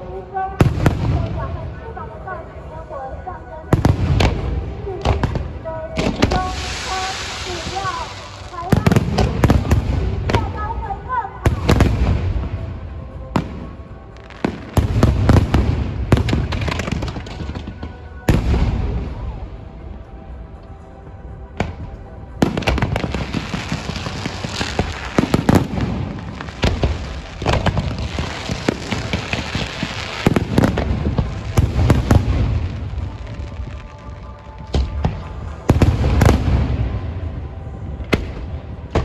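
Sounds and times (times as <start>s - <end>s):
fireworks crackling and popping: 3.8s - 10.9s, 14.1s - 18.9s, 22.4s - 37.0s.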